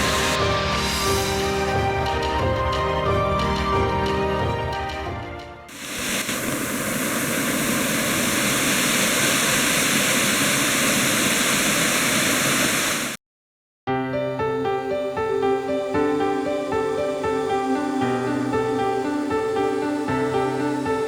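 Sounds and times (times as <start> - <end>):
waterfall rushing: 0.0 - 0.4, 5.7 - 13.2.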